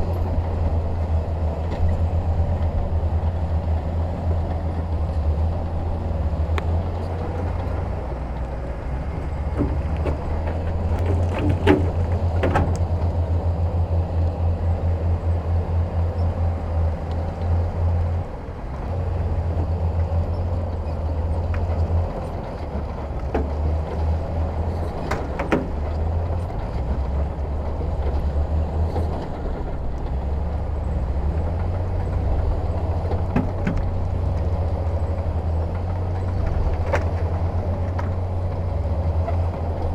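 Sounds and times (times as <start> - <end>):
diesel machinery engine rumble: 0.0 - 39.9
sharp knocks: 7.6 - 13.1, 23.2 - 26.2, 33.3 - 34.0.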